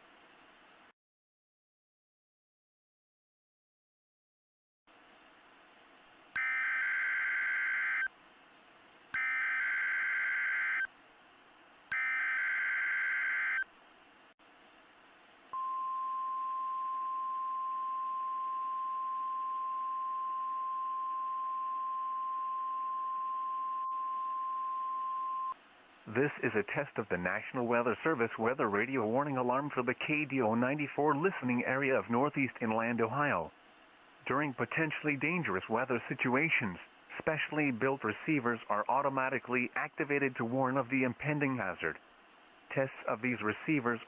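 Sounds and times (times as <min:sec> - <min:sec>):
steady warning alarm tone: 0:06.4 - 0:08.1, 0:09.2 - 0:10.9, 0:11.9 - 0:13.7
faint hiss: 0:25.6 - 0:44.0.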